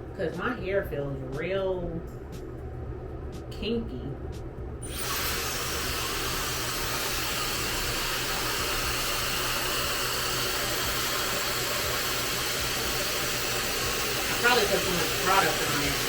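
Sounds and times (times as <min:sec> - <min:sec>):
hair dryer blowing: 0:04.8 - 0:16.0.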